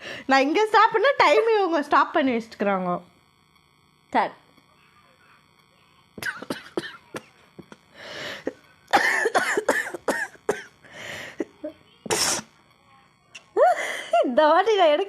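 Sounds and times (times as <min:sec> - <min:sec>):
person coughing: 0:06.2 - 0:07.4, 0:08.3 - 0:12.5.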